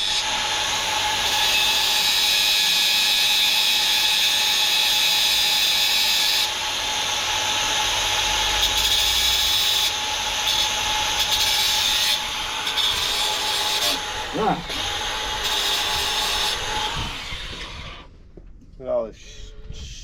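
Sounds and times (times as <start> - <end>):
cordless drill whining: 6.4 - 18.1.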